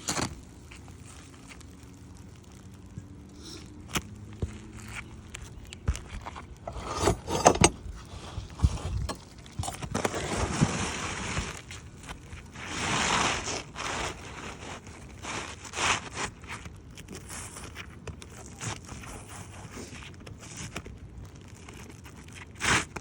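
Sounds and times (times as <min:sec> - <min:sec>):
scraping on roof shingles: 0:05.9 - 0:16.6.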